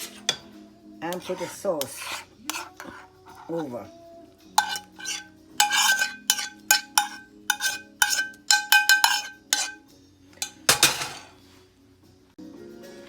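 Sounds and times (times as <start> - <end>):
utensil clinking against a dish: 0.2 - 3.9, 4.5 - 11.4
utensil scraping clatter: 1.1 - 3.8, 4.6 - 9.8.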